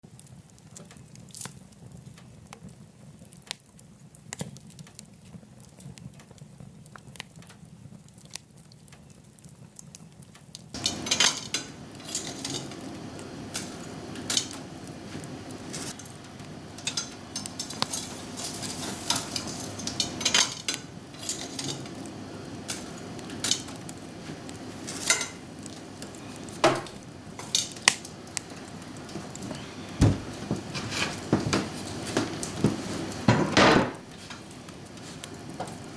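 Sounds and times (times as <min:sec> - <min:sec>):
wood fire crackling: 0:00.1 - 0:35.9
fire hissing: 0:10.8 - 0:35.9.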